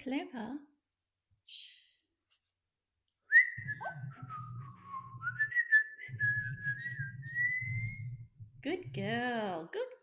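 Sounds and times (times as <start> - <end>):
robot whistling a tune: 3.3 - 8.4
low hum: 3.6 - 9.2.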